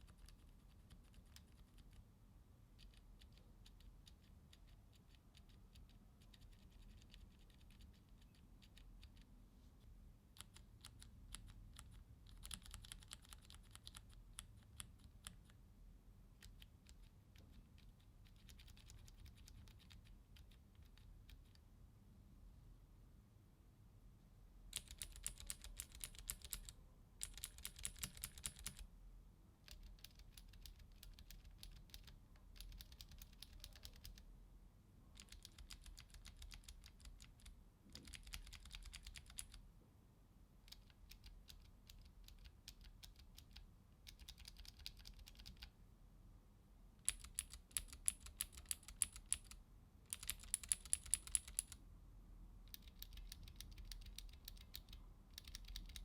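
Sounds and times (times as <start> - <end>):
mechanical keyboard typing clicks: 10.4 - 15.5, 24.8 - 28.8, 29.6 - 34.2, 35.2 - 39.6, 40.7 - 45.7, 47.0 - 51.8, 52.7 - 56.0.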